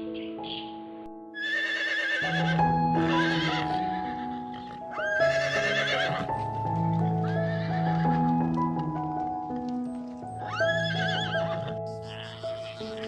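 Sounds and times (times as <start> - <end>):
background music with held notes: 0.0 - 13.0
horse neighing: 1.4 - 6.3, 7.2 - 8.3, 10.4 - 13.0.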